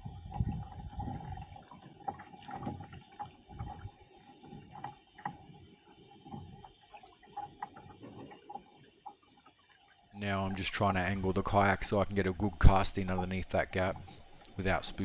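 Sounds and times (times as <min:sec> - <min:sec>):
knocks and thumps on kayak hull: 0:02.0 - 0:03.9.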